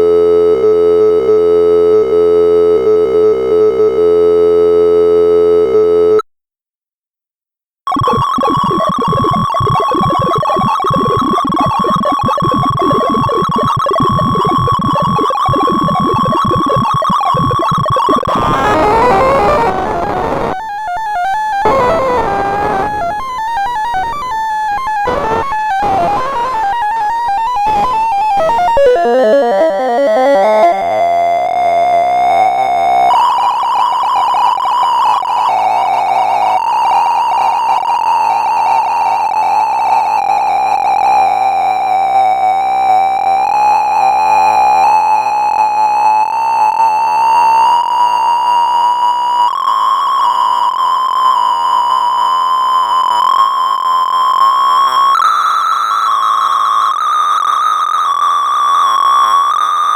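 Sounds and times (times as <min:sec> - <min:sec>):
synthesized tones: 0:07.9 - 0:42.0.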